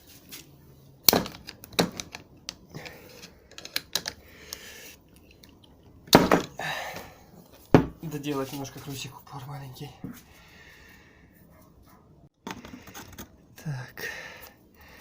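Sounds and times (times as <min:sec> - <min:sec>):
metal tools clicking and knocking: 0:01.1 - 0:04.2.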